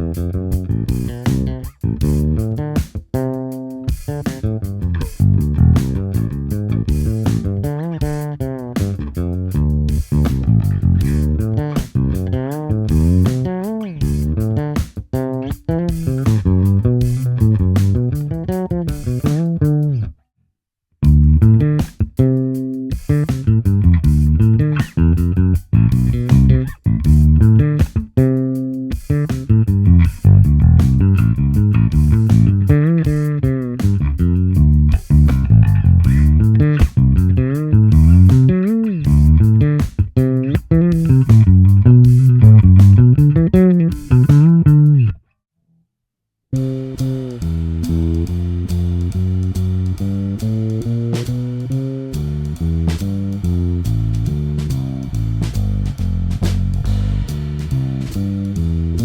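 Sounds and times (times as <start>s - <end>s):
fretless electric bass sliding notes: 0.0s - 20.1s, 21.0s - 45.2s, 46.6s - 59.0s.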